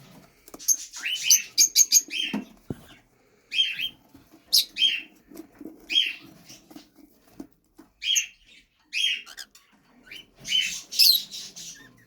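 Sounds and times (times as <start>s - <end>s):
cockatiels calling harshly: 0.6s - 5.2s, 5.9s - 6.8s, 8.0s - 12.0s.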